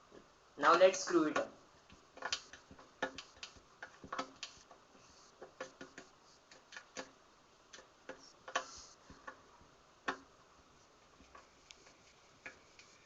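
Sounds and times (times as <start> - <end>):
screwdriver clicks and taps: 2.2 - 4.5.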